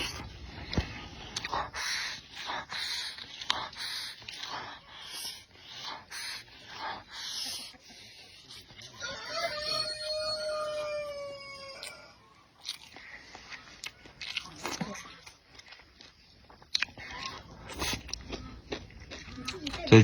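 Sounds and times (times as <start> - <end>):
close eating noises: 0.0 - 20.0
rooster crowing: 9.0 - 12.4.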